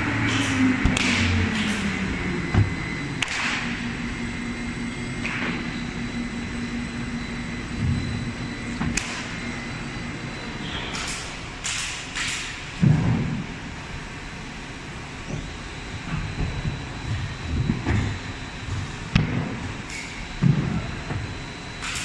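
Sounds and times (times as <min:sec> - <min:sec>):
lathe motor hum: 0:00.0 - 0:11.6.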